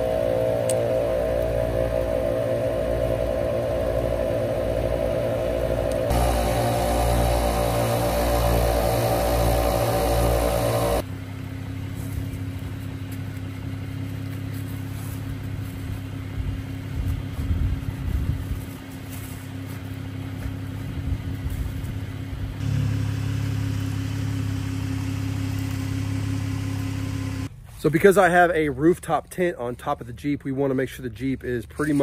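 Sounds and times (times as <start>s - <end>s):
engine running at low speed: 0.0s - 27.6s.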